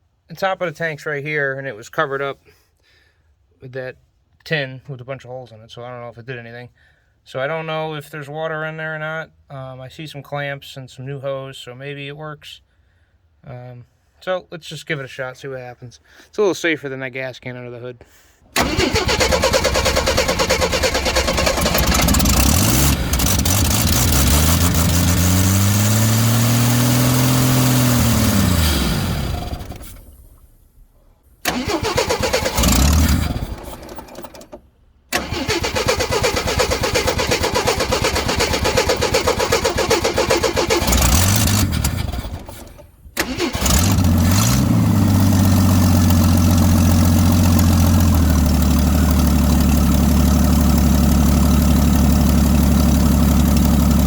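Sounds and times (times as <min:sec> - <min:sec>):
engine revving and idling: 0:18.6 - 0:30.4, 0:31.5 - 0:34.0, 0:35.2 - 0:54.0
starter cranking engine: 0:18.6 - 0:30.4, 0:31.4 - 0:54.0.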